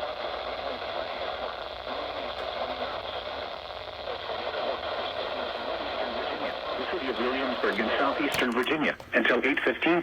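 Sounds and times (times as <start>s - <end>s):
radio static hiss: 0.0s - 10.0s.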